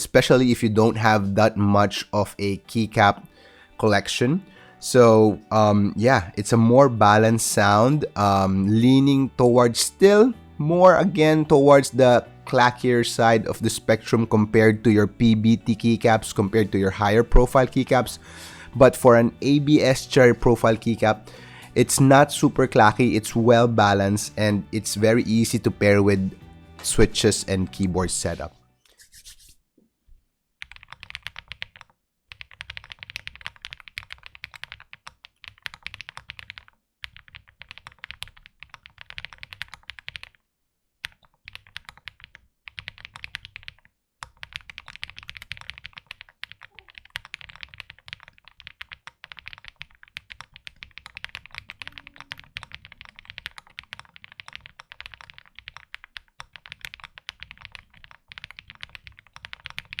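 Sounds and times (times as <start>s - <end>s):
fast typing on mechanical keyboard: 30.6s - 40.4s, 41.0s - 60.0s.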